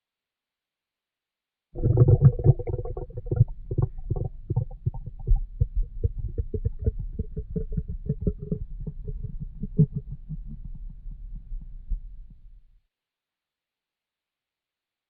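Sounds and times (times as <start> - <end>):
stomach growling and gurgling: 1.8 - 12.6.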